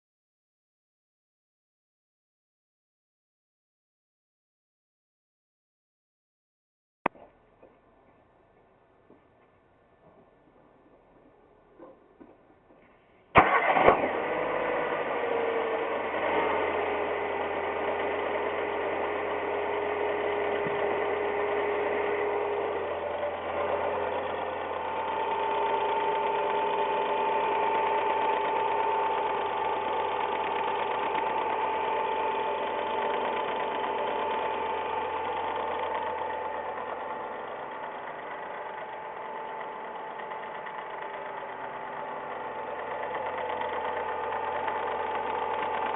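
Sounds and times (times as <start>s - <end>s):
car engine starting and idling: 13.1s - 45.9s.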